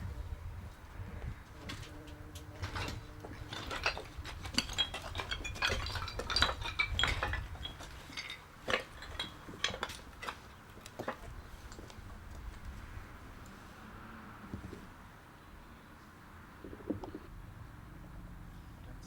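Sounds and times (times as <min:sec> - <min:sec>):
rubble clinking and clattering: 0:01.4 - 0:13.4.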